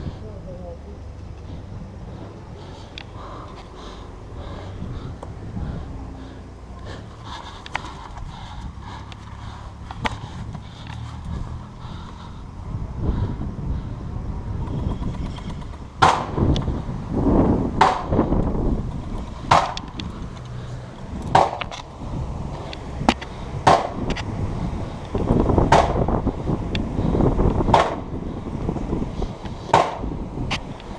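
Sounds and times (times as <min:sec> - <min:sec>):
airsoft gun shots: 0:16.0 - 0:16.4.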